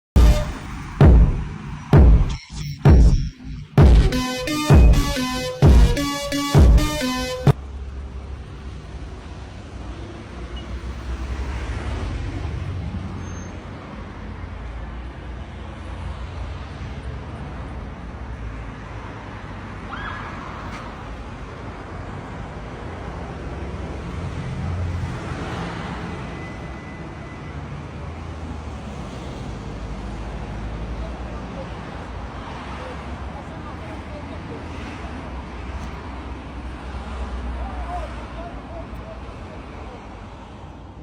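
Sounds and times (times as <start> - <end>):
vehicles passing: 7.1 - 26.6, 27.8 - 41.0.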